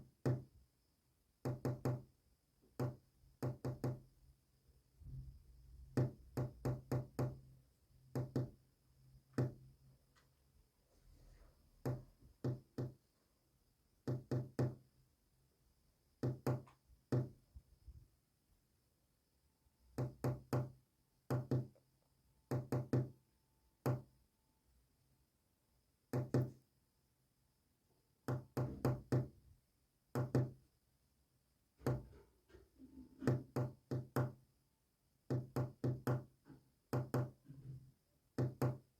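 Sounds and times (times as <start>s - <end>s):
knocking on hard surface: 0.2s - 0.5s, 1.4s - 2.1s, 2.8s - 4.0s, 5.9s - 7.5s, 8.1s - 8.6s, 9.3s - 9.7s, 11.8s - 13.0s, 14.0s - 14.8s, 16.2s - 17.4s, 20.0s - 21.8s, 22.5s - 23.1s, 26.1s - 26.6s, 28.3s - 29.4s, 30.1s - 30.6s, 31.8s - 34.4s, 35.3s - 37.8s, 38.4s - 38.9s.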